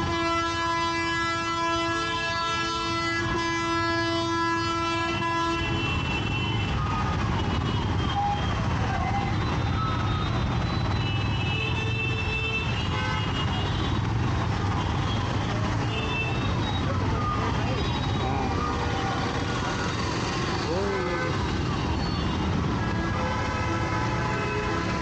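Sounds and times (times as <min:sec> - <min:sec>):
vehicle horn blaring: 0:00.0 - 0:06.8
road traffic noise: 0:00.0 - 0:25.0.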